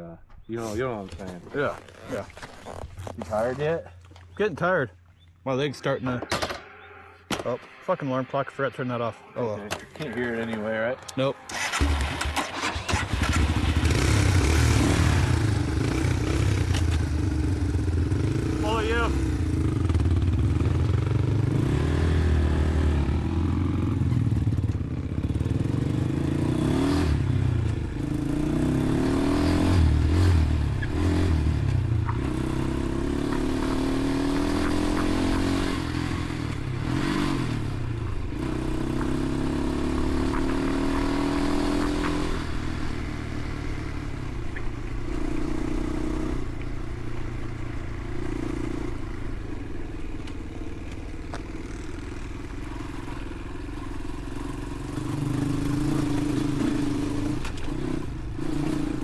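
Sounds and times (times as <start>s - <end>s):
dirt bike engine revving: 11.5s - 49.6s, 53.8s - 59.0s.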